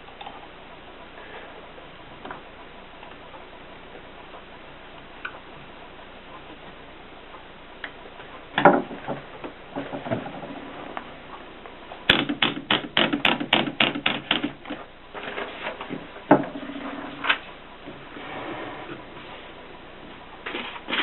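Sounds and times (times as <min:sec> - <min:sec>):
typewriter typing: 0:12.1 - 0:14.8.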